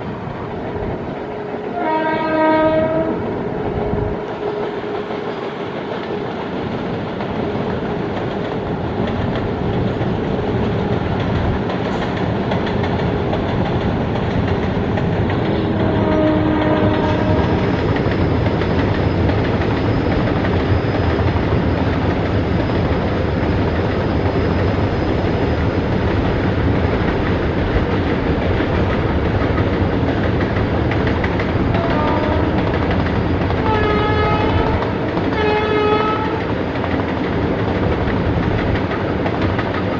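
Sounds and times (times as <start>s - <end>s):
freight train rumbling: 0.0s - 39.9s
locomotive horn blasts: 1.6s - 3.3s, 15.6s - 17.6s, 31.8s - 32.7s, 33.6s - 36.5s.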